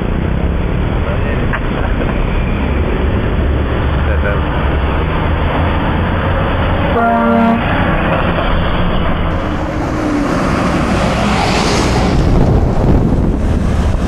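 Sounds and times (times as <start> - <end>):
heavy engine and road noise: 0.0 - 14.0
truck air horn blast: 6.9 - 7.8.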